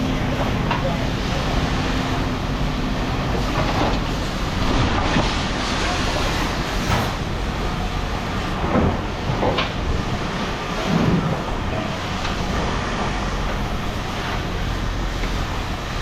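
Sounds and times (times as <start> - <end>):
muffled voices: 0.0 - 2.3, 5.6 - 7.2
machinery rumbling: 0.0 - 16.0.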